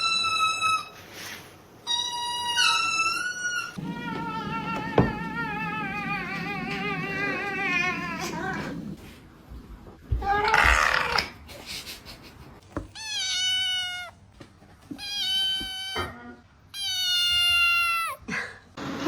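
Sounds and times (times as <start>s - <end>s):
cat meowing: 1.9s - 8.7s, 12.9s - 14.2s, 14.9s - 18.2s.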